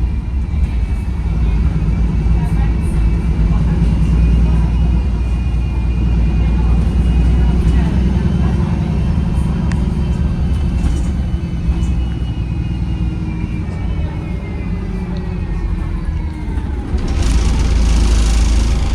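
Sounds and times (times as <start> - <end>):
bus engine rumble: 0.0 - 18.9
faint drivetrain whine: 16.6 - 18.9
loud hiss: 17.0 - 18.9.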